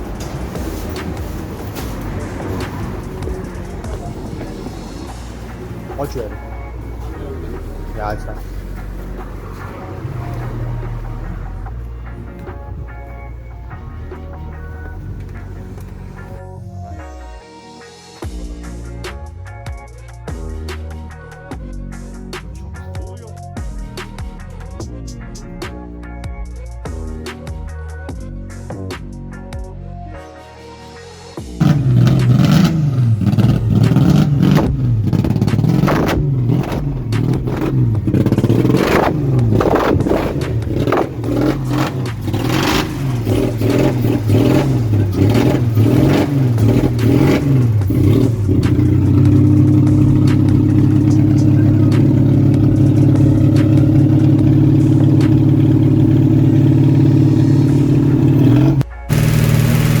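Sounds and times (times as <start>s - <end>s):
car engine revving: 0.0s - 16.6s, 31.6s - 60.0s.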